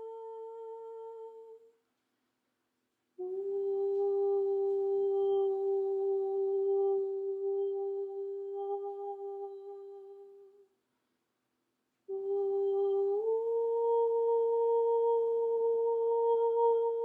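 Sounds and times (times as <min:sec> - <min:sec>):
person humming: 0:03.2 - 0:10.6, 0:12.1 - 0:17.0.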